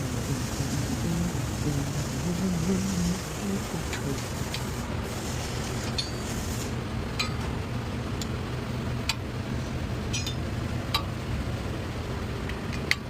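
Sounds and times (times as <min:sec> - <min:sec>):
steady low hum: 0:00.0 - 0:13.0
tools clinking against metal: 0:05.9 - 0:06.3, 0:07.2 - 0:07.5, 0:10.1 - 0:10.4.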